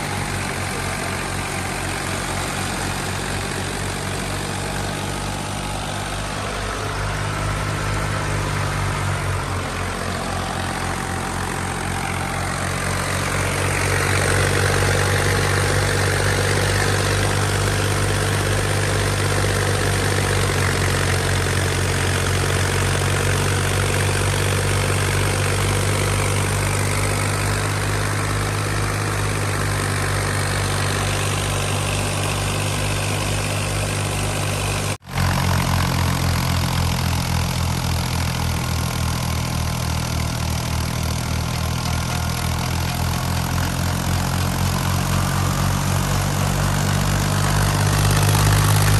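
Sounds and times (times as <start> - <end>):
tractor diesel engine running: 0.0 - 48.9.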